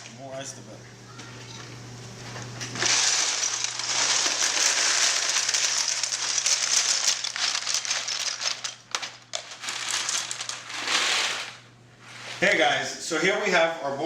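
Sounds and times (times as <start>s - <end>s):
ice cubes pouring into container: 2.8s - 11.6s.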